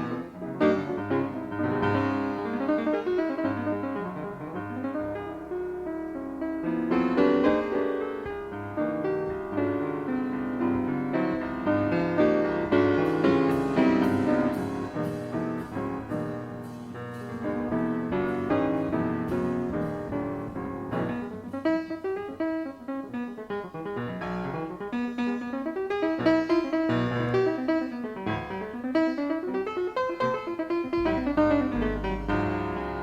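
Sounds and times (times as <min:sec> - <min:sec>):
jazz fusion band music: 0:11.9 - 0:21.7, 0:26.6 - 0:33.0
keyboard notes: 0:30.8 - 0:33.0.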